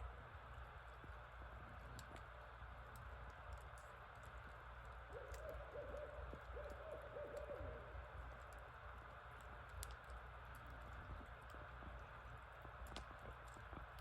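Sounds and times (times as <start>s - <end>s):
faint clicks: 1.8s - 14.0s
owl hooting: 5.1s - 8.5s.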